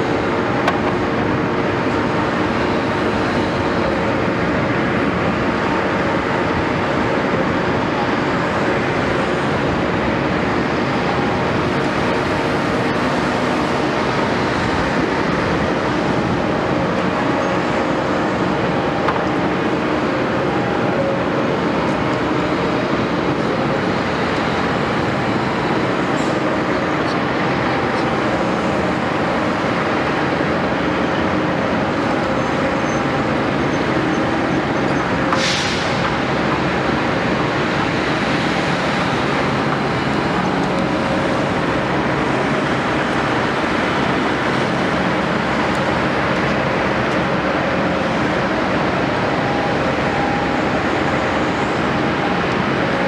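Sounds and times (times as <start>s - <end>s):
excavator diesel engine running: 0.0s - 53.0s.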